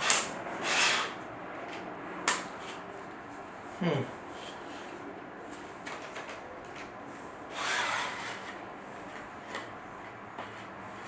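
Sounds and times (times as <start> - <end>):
shaft scraping slide: 0.0 - 1.2, 7.5 - 8.6.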